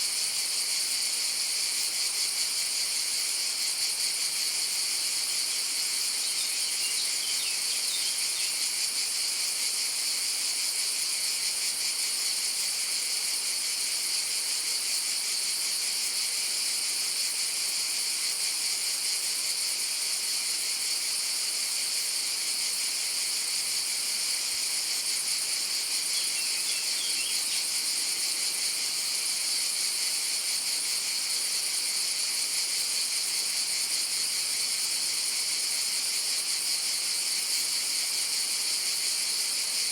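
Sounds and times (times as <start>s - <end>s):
cicadas buzzing: 0.0s - 39.9s
faint bird chirps: 6.1s - 8.7s, 26.0s - 27.9s.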